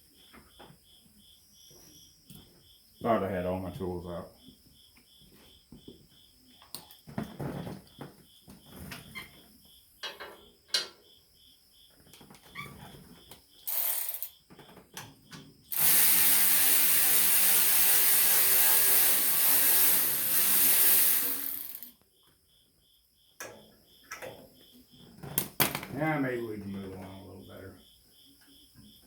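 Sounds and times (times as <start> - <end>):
power tool hissing: 15.7 - 21.9.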